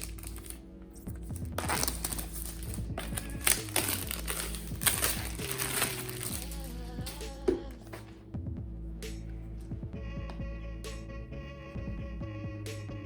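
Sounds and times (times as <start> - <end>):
packaging crinkling and rustling: 0.0 - 0.6, 1.6 - 6.8
background music: 0.0 - 13.0.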